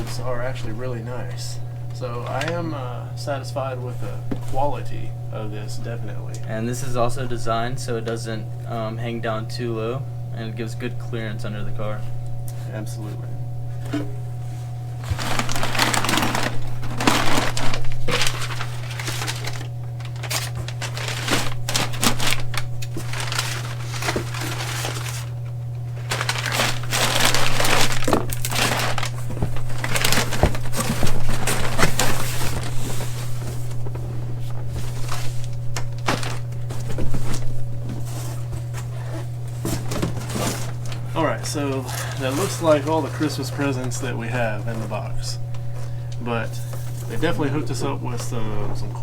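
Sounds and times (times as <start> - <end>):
low hum: 0.0 - 49.0
packing material crinkling: 14.0 - 49.0.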